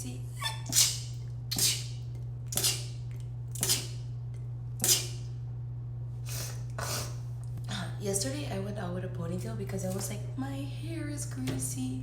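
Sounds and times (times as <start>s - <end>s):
person sneezing: 0.4s - 1.9s, 4.8s - 5.2s, 6.3s - 7.2s.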